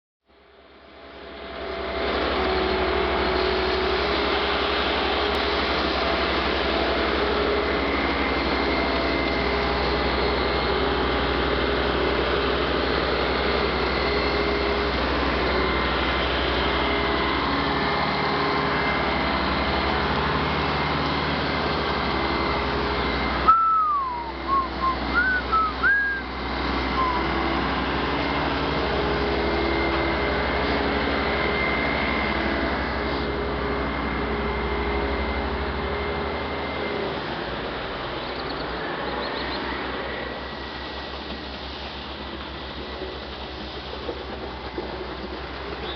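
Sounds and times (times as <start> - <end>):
concrete pump droning: 0.7 - 45.9
short whistles: 23.4 - 26.3, 26.9 - 27.4.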